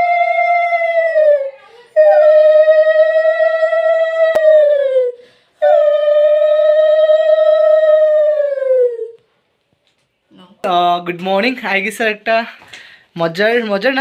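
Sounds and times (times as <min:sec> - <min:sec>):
dog howling: 0:00.0 - 0:09.2.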